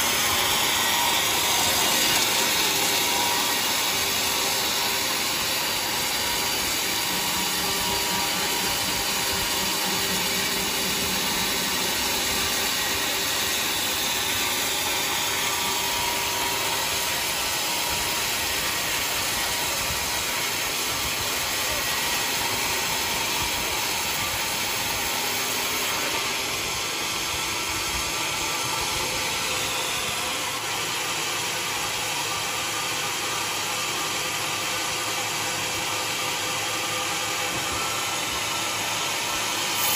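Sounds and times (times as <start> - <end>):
sawmill saw whirring: 0.0 - 39.9.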